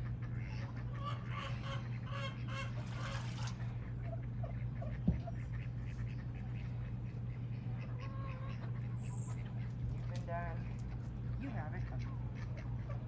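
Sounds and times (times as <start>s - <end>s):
ducks quacking: 0.0s - 13.0s
steady low hum: 0.0s - 13.0s.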